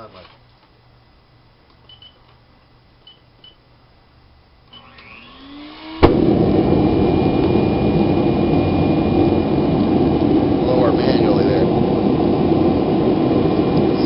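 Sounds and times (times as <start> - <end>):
blower motor whining: 4.7 - 14.0
gas forge roaring: 5.0 - 14.0
sharp pop: 6.0 - 6.4.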